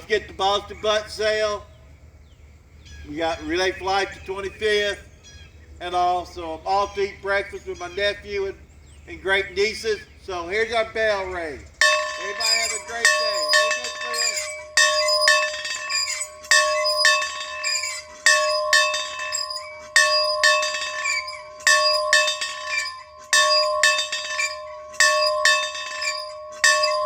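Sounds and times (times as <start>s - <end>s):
bell ringing: 11.8s - 27.0s.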